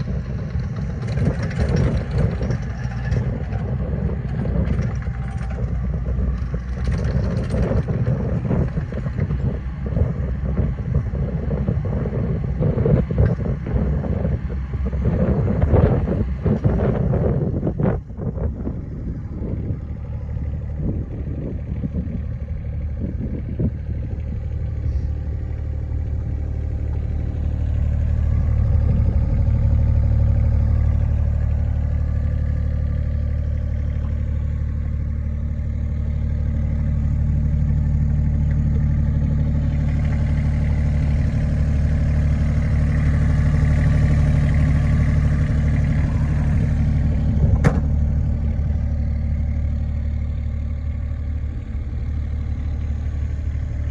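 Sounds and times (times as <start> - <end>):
clatter: 0.0 - 53.9
diesel engine running: 0.0 - 53.9.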